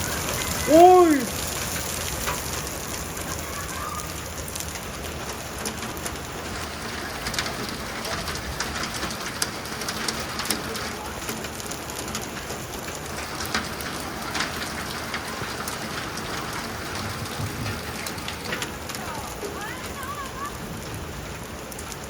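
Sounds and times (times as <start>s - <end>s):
hailstones ticking on surfaces: 0.0s - 22.0s
rain hissing: 0.0s - 22.0s.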